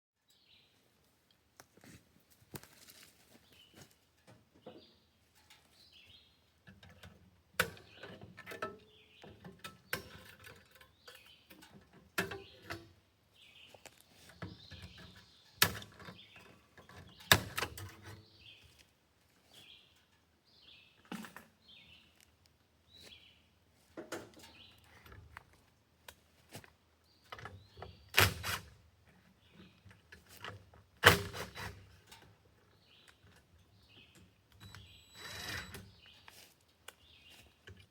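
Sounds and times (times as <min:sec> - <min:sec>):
birds chirping: 0:19.4 - 0:25.3, 0:32.6 - 0:37.9.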